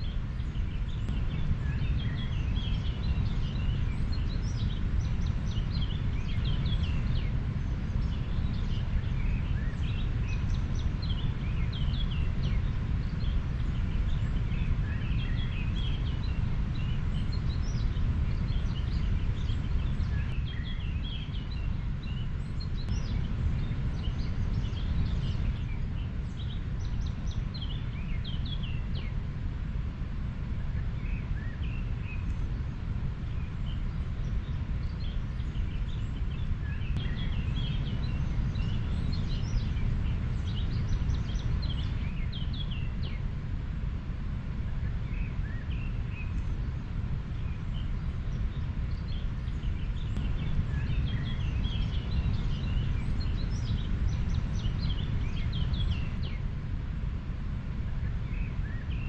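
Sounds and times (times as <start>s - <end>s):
birds chirping: 33.2s - 43.2s, 47.3s - 56.4s.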